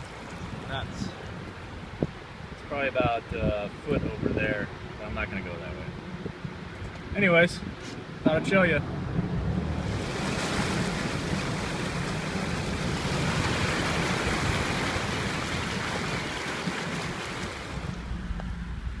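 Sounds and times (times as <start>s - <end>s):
tyres rushing through floodwater: 0.0s - 19.0s.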